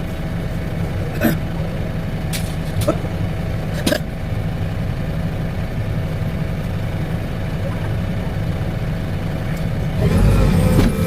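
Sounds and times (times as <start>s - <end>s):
excavator engine rumbling: 0.0s - 11.0s.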